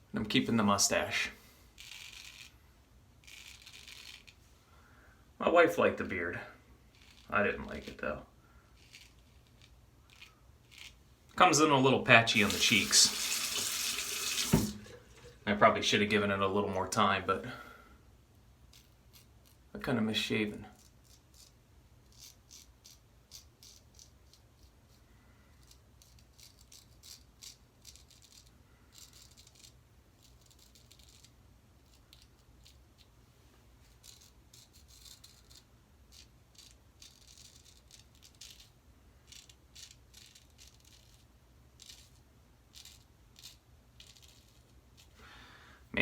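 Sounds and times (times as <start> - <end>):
razor scratching stubble: 1.8 - 2.5, 3.2 - 4.4, 6.9 - 8.1, 8.7 - 11.0, 12.3 - 15.0, 20.7 - 25.0, 25.6 - 33.2, 33.8 - 45.2.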